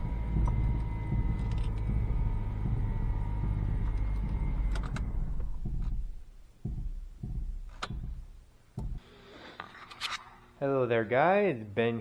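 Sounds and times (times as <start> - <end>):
dull thumps: 0.0 - 9.0
vehicle engine rumbling: 0.0 - 9.0.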